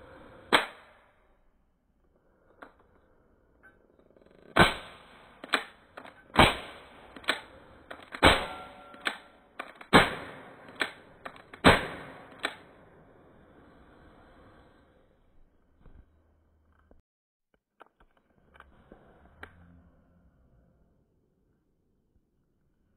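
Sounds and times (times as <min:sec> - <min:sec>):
pistol shots: 0:04.6 - 0:12.7.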